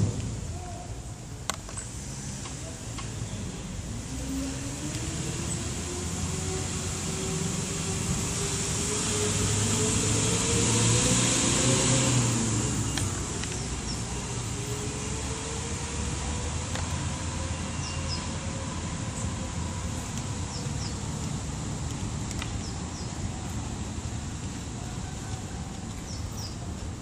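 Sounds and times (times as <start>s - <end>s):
motor hum rising in pitch: 4.4s - 12.9s.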